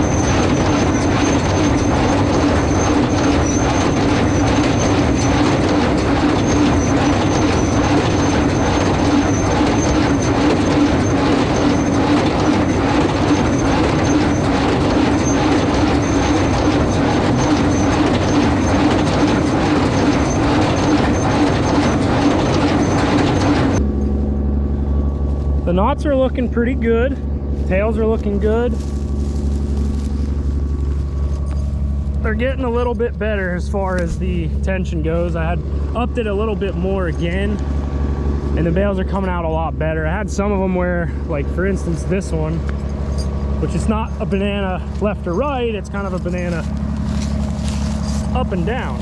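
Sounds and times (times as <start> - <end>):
tractor engine running: 0.0 - 49.0.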